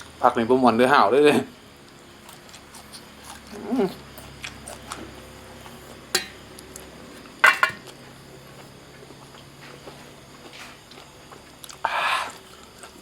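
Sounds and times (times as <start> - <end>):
soft chewing: 1.7 - 13.0
dishes and cutlery clicking: 6.2 - 6.4, 7.4 - 7.8.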